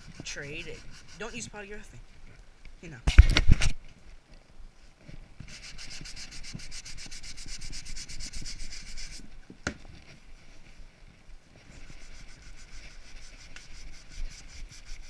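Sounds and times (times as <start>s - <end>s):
rubbing on wood: 0.0s - 1.6s, 5.5s - 9.3s, 11.7s - 15.0s.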